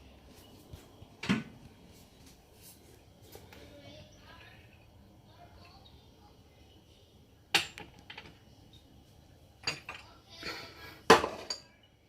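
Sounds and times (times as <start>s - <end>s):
kitchenware knocking and clattering: 7.6s - 8.4s, 9.6s - 10.1s, 11.1s - 11.8s.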